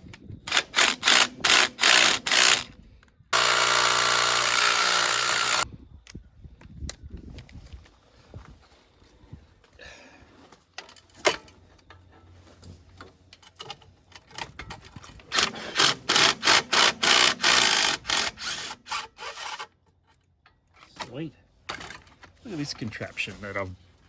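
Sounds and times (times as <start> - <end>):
hand tools clicking on metal: 0.5 - 2.7, 3.4 - 5.7, 13.3 - 20.6
rasping strokes on metal: 3.4 - 5.6, 15.4 - 19.7.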